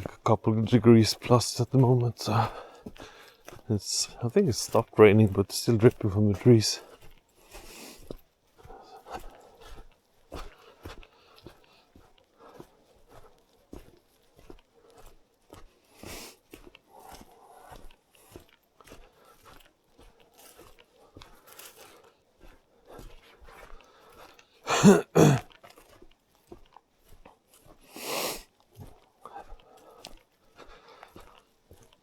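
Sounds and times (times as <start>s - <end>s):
footsteps crunching on wet path: 0.0s - 32.0s.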